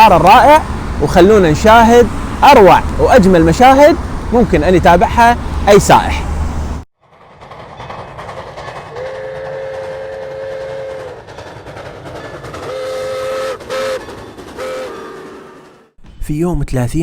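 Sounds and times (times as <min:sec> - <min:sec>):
moving train noise: 0:00.0 - 0:16.1
train horn blasts: 0:08.9 - 0:11.2, 0:12.6 - 0:15.9.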